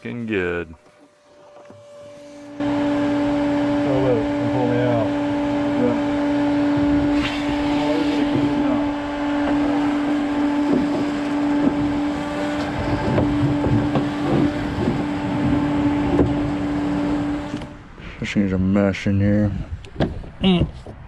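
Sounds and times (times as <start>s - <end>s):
shop vac whining: 1.5s - 17.7s.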